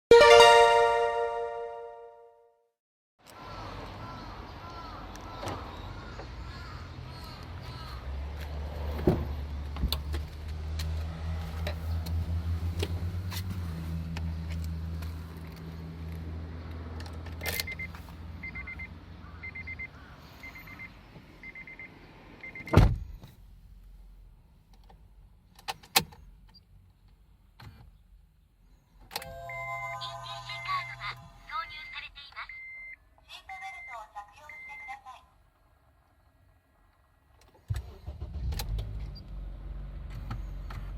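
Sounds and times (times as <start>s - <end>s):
thump: 22.8s - 23.1s
reverse gear chime: 29.2s - 30.9s.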